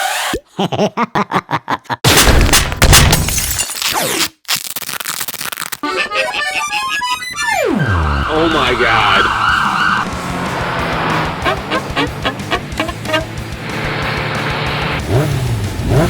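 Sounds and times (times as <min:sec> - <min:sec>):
bouncy pitched notes: 0:05.8 - 0:08.3, 0:09.0 - 0:13.4.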